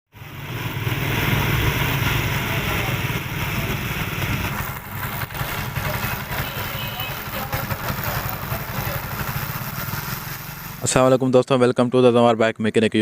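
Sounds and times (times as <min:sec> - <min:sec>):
motorcycle engine running: 0:00.2 - 0:11.2.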